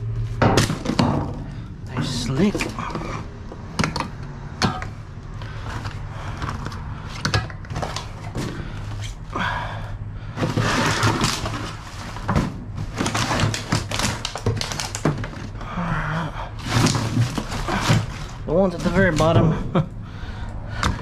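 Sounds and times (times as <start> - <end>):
knocks and clunks of scrap: 10.3 - 15.6, 16.6 - 19.7
scraping and rustling: 10.3 - 15.6, 16.5 - 19.6.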